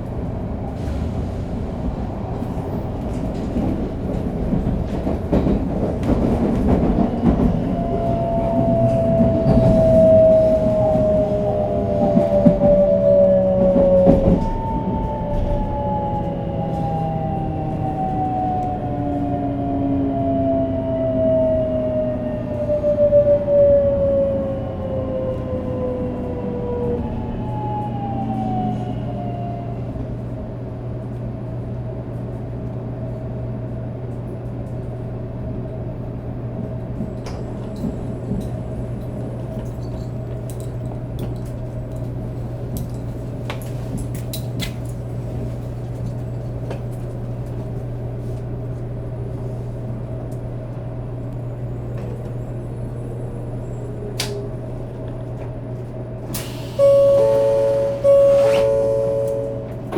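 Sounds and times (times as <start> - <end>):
train inverter tones gliding down: 0.0 - 31.7, 47.4 - 59.9
low train hum: 0.0 - 59.9.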